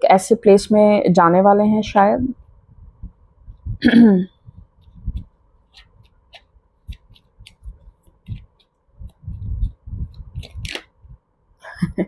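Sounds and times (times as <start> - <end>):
soft low thuds: 2.3 - 6.1, 6.9 - 11.2
cards being shuffled: 5.7 - 10.9.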